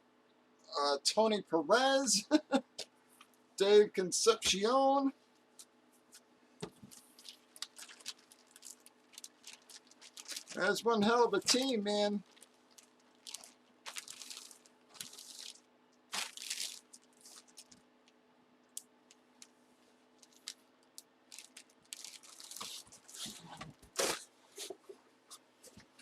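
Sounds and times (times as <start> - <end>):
faint hum: 0.0 - 26.0
packaging rustling and crinkling: 6.6 - 18.2, 20.2 - 24.8.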